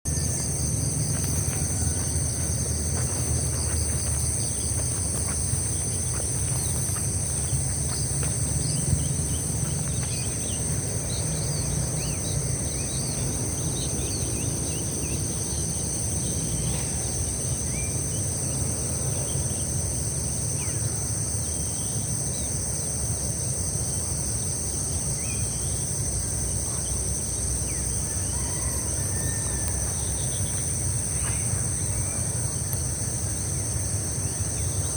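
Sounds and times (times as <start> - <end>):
low steady rumble: 0.1 - 21.3
insect chorus drone: 0.1 - 34.9.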